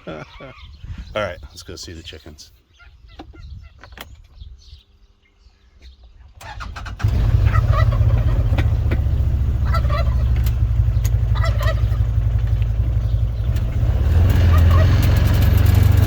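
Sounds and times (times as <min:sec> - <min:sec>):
vehicle engine running: 0:07.0 - 0:16.0
turkey gobbling: 0:07.3 - 0:08.8, 0:09.5 - 0:10.4, 0:11.3 - 0:12.1
clicks: 0:10.3 - 0:11.2.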